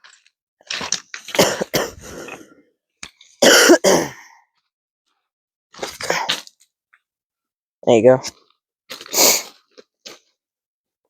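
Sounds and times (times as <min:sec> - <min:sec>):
person clearing throat and coughing: 0:01.4 - 0:02.4, 0:03.4 - 0:04.2.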